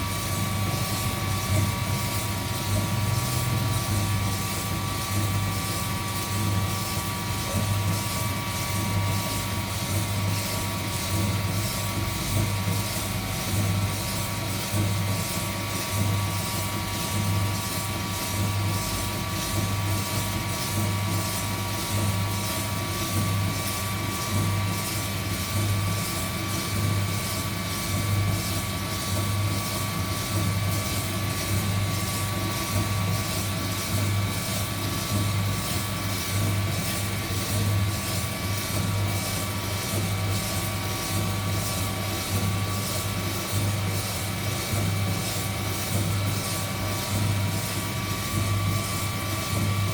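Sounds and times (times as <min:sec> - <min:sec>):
heat gun fan whining: 0:00.0 - 0:14.7.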